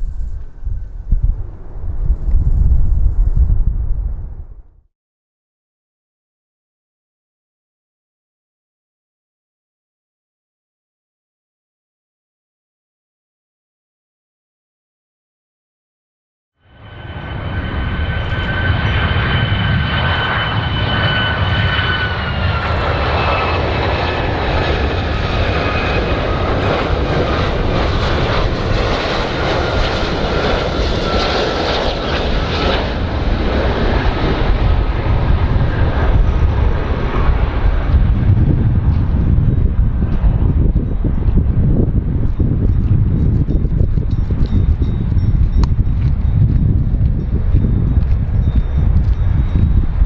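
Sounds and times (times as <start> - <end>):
aircraft engines rumbling and whining: 0.0 - 4.8, 16.6 - 50.0.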